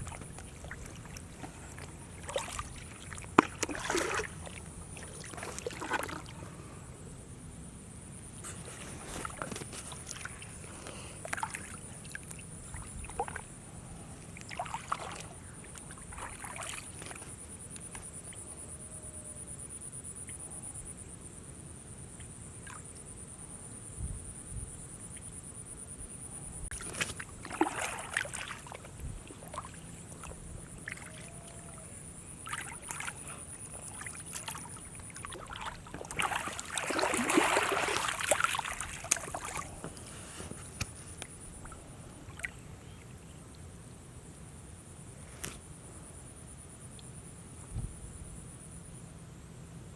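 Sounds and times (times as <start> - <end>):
water splashing and sloshing: 0.0 - 6.8, 8.3 - 18.4, 26.7 - 43.2.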